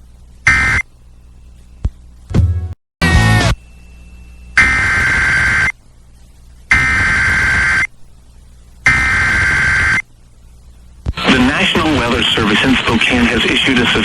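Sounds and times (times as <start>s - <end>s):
digital data tone bursts: 0.5s - 0.8s, 4.6s - 5.7s, 6.7s - 7.9s, 8.8s - 10.0s.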